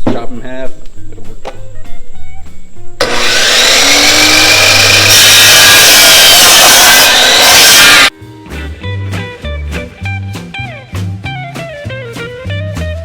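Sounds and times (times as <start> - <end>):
electric saw cutting wood: 3.0 - 8.1.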